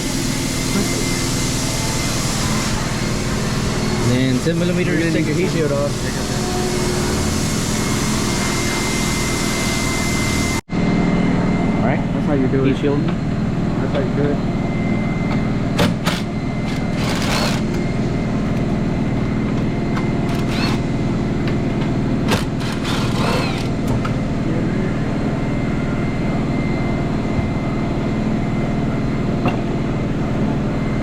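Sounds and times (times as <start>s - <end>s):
steady mechanical hum: 0.0s - 31.0s.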